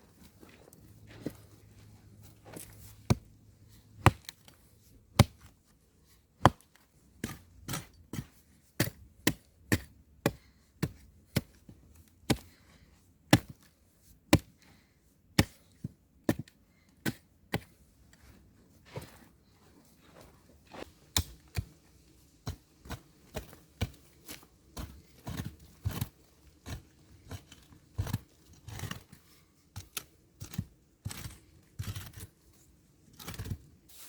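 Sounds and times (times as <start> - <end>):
axe chopping wood: 3.0 - 3.2, 4.0 - 4.5, 5.2 - 5.5, 6.4 - 11.6, 12.3 - 12.6, 13.3 - 13.7, 21.1 - 21.7, 22.4 - 29.0.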